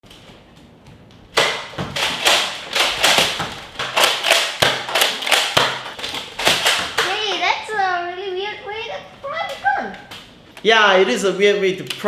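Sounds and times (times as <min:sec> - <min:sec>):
foam dart shots: 0:01.4 - 0:07.2
toy blaster plastic clacks: 0:01.4 - 0:07.2.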